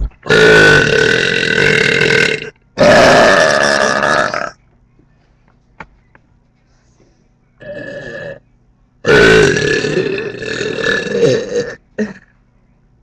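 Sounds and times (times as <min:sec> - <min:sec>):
loud burps: 0:00.2 - 0:04.6, 0:07.6 - 0:08.4, 0:09.0 - 0:12.3.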